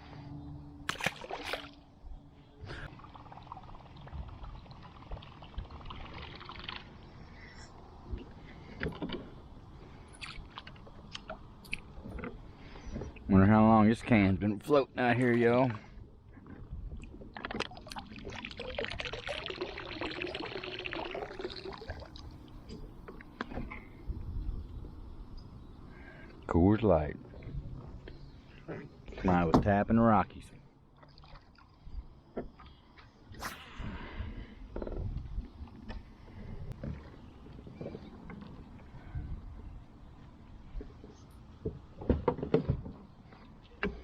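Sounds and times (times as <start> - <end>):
water trickling and dripping: 2.9 - 7.0, 17.0 - 23.4.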